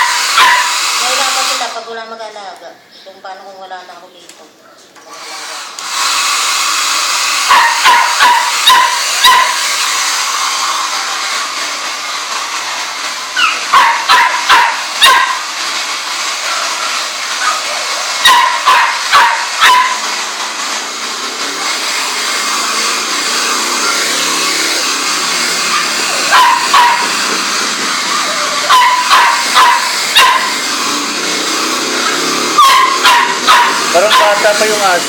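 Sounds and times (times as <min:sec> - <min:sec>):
small dog yapping: 0:00.0 - 0:00.8, 0:07.5 - 0:09.8, 0:13.4 - 0:15.4, 0:16.4 - 0:20.1, 0:25.6 - 0:27.2, 0:27.9 - 0:30.6, 0:32.0 - 0:34.4.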